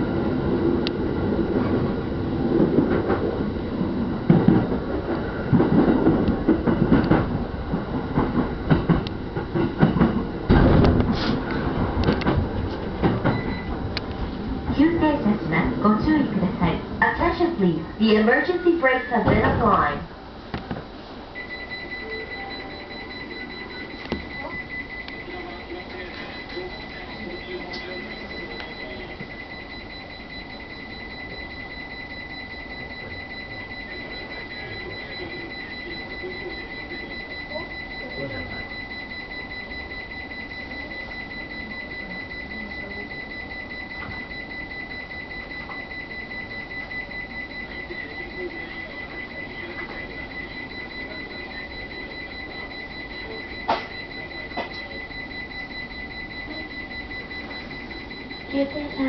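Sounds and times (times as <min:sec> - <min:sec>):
high-pitched electronic alarm tone: 0:21.4 - 0:59.0.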